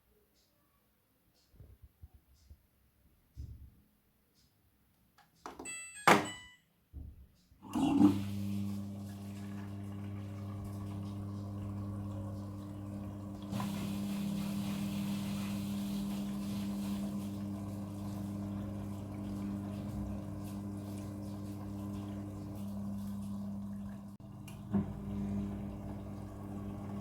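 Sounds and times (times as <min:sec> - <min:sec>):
washing machine pump hum: 0:07.6 - 0:27.0.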